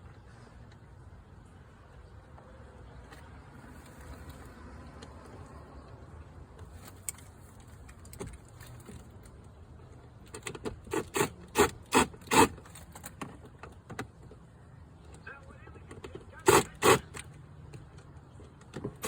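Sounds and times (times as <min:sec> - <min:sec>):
rubbing and handling noise: 0:16.0 - 0:17.3.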